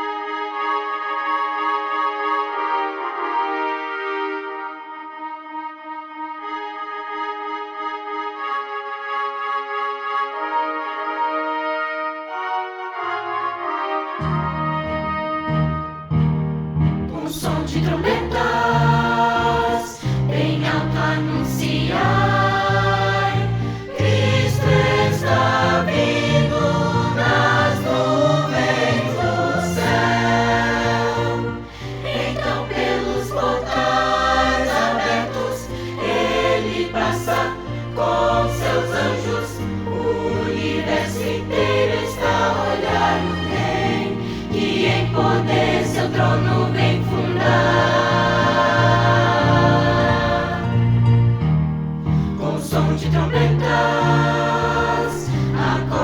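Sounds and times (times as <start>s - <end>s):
instrumental accompaniment: 0.1s - 56.0s
choir singing a hymn: 17.1s - 51.3s, 52.1s - 56.0s.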